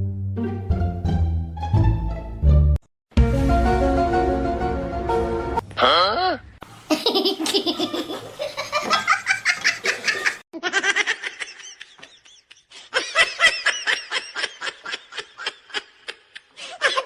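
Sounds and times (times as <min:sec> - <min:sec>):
people laughing hard: 0:06.9 - 0:17.0.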